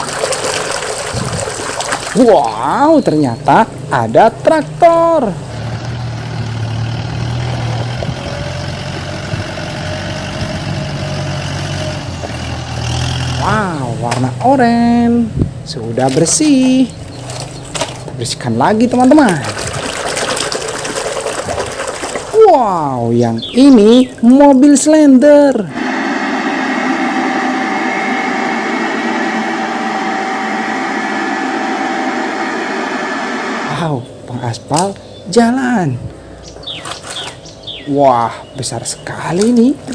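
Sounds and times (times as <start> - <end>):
low motor hum: 0.0 - 35.3
faint steady whine: 25.2 - 36.4.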